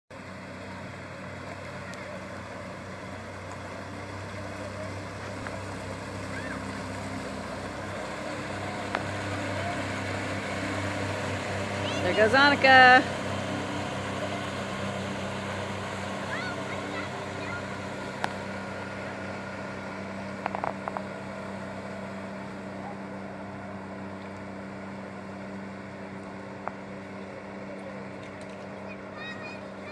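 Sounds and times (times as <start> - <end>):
outboard motor humming: 0.1 - 29.9
wind and water rushing: 0.2 - 26.5.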